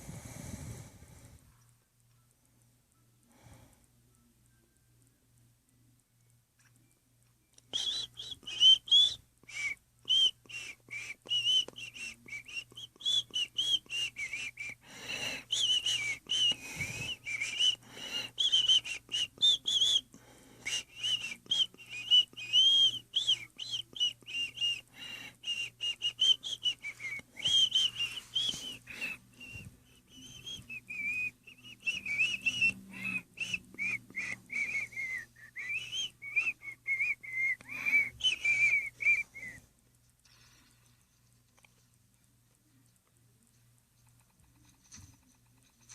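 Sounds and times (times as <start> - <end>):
high wavering whistling: 7.7 - 14.8, 20.7 - 39.6.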